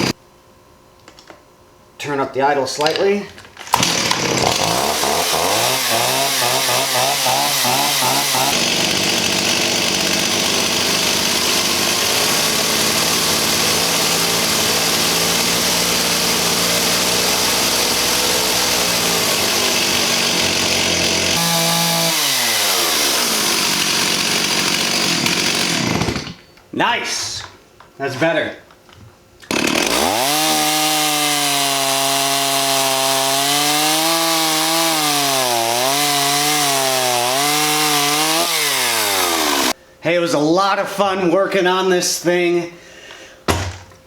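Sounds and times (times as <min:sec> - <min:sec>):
chainsaw idling and revving: 0:03.7 - 0:26.4, 0:29.5 - 0:39.8.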